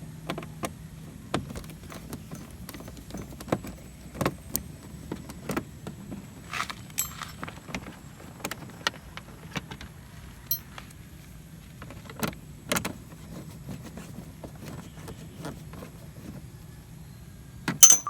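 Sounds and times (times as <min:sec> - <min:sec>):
metallic ring: 0:07.0 - 0:07.4
small metal clicks and clinks: 0:07.0 - 0:07.6, 0:10.5 - 0:10.8.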